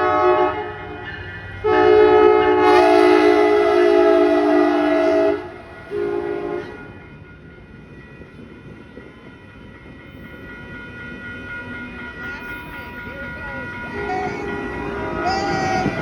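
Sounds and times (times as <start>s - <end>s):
train horn blast: 0.0s - 7.0s, 12.4s - 16.0s
train running noise: 0.0s - 16.0s.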